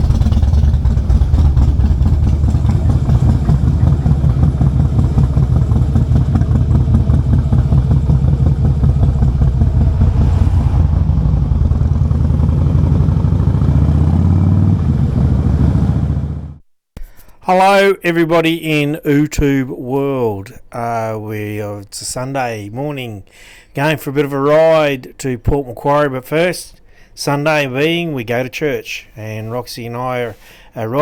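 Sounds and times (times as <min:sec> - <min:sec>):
motorcycle engine running: 0:00.0 - 0:16.6.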